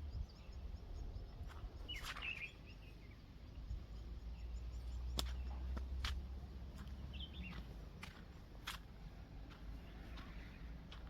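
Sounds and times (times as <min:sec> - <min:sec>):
bird chirp: 0:00.0 - 0:11.0.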